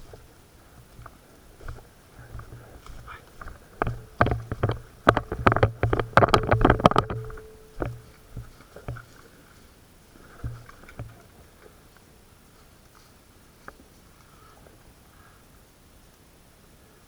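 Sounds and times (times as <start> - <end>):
low motor hum: 0.0 - 9.3
airsoft gun clacks: 1.0 - 9.0.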